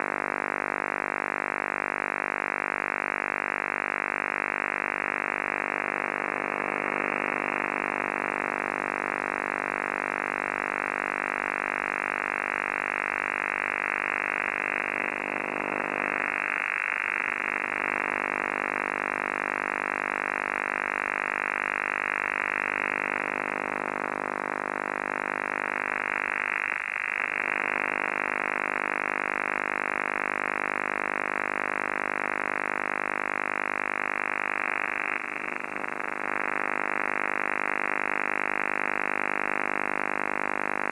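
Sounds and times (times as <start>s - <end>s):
radio buzzing transmission: 21.6s - 40.9s.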